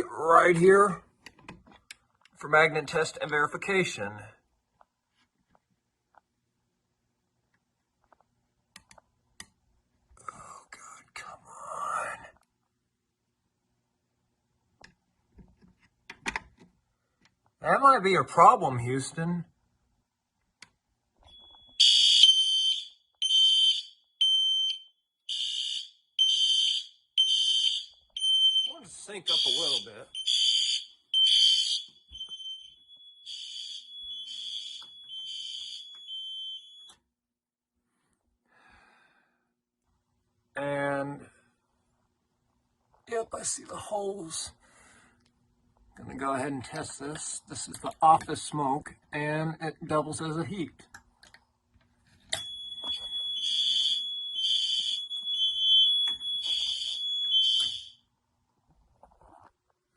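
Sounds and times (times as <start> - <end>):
fire alarm horn blasts: 21.3 - 36.9, 52.4 - 58.0.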